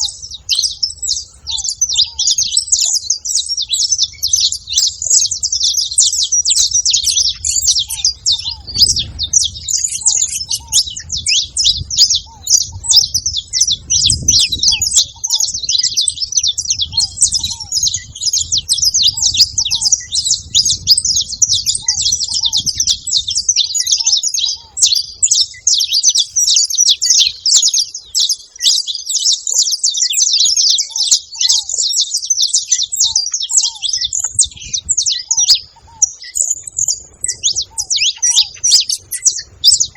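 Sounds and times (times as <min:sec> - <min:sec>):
faint low dove call: 0:00.0 - 0:28.7
finch chirps and trills: 0:00.0 - 0:39.9.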